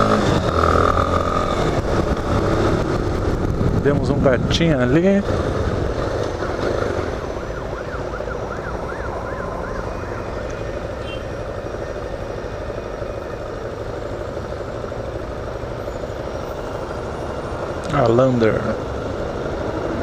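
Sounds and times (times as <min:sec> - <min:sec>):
motorcycle engine and road noise: 0:00.0 - 0:20.0
emergency siren wailing: 0:06.3 - 0:13.8.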